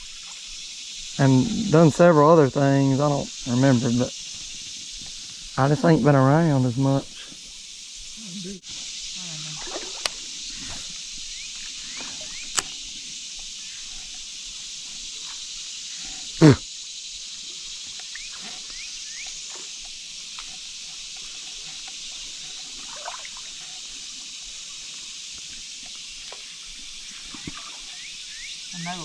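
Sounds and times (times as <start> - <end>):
creek water flowing: 0.0 - 29.0
faint bird chirps: 10.4 - 12.6, 27.0 - 29.0.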